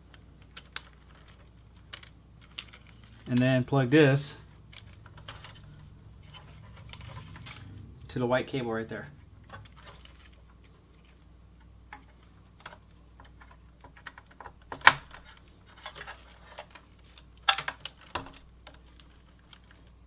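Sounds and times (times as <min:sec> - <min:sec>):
clicks of computer parts handled: 0:11.9 - 0:19.8.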